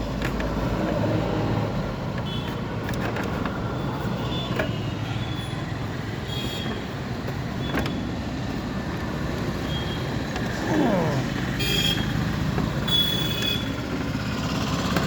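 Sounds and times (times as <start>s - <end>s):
motor vehicle rumble: 5.5s - 15.0s.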